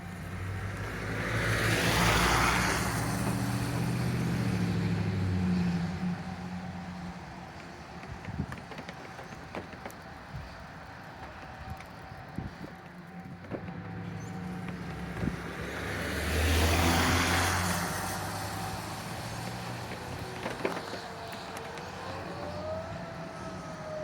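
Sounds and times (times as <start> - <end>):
vehicle passing by: 0.0 - 8.1, 11.6 - 24.0
outdoor warning siren: 10.3 - 24.0.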